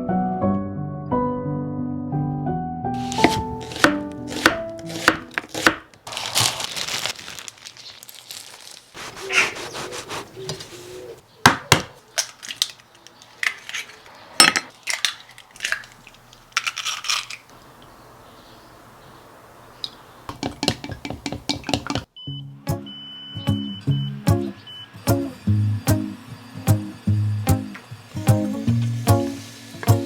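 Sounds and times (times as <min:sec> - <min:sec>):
utensils and cookware clattering: 0:12.2 - 0:15.9
plucked-string music: 0:23.5 - 0:30.0.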